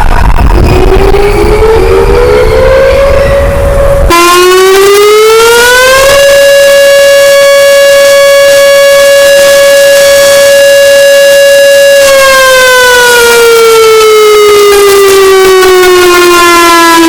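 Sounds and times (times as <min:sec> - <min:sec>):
outdoor warning siren: 0:00.0 - 0:17.0.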